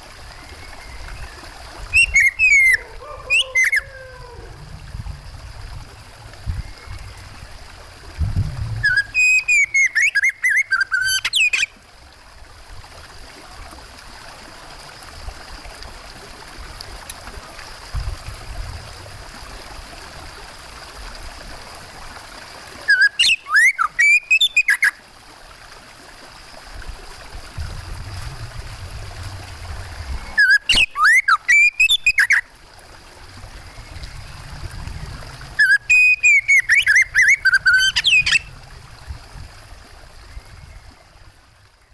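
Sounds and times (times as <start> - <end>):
running water: 0.0 - 41.9
bird singing whistled notes: 0.4 - 4.1, 8.8 - 11.7, 22.9 - 25.0, 30.2 - 32.4, 35.6 - 38.5.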